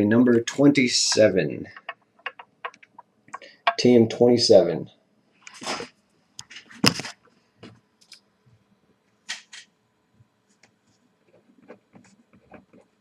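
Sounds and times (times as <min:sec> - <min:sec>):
clicks and knocks on tabletop: 0:01.1 - 0:03.8.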